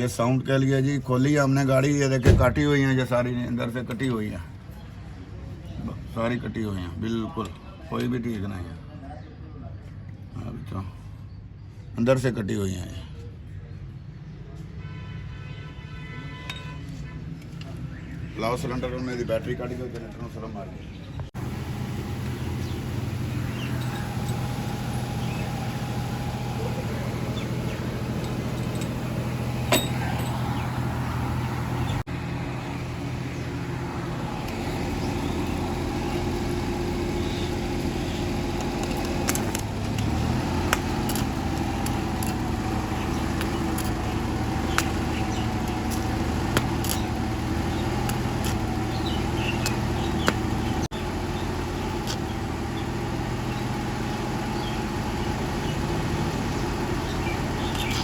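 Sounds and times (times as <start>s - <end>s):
engine running: 21.3s - 58.0s
sharp taps: 49.6s - 50.5s.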